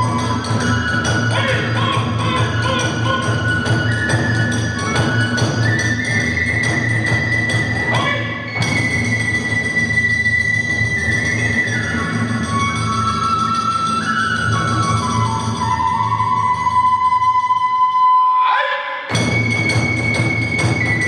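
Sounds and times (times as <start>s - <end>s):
drums and hand cymbals: 0.0s - 17.8s, 19.1s - 21.0s
bamboo flute melody: 0.0s - 21.0s.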